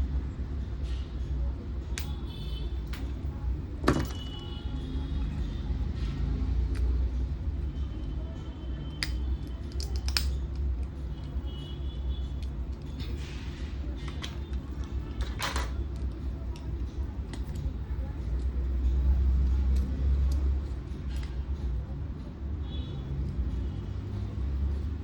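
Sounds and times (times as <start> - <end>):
sharp clicks and taps: 9.0 - 11.4.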